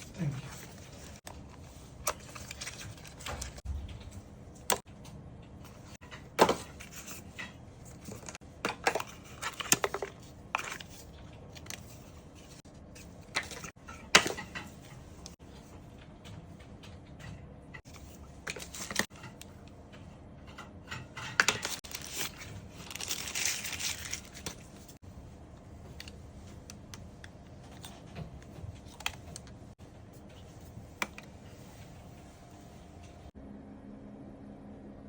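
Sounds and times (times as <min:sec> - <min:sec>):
rustling and crinkling: 0:00.0 - 0:04.9, 0:21.2 - 0:33.3.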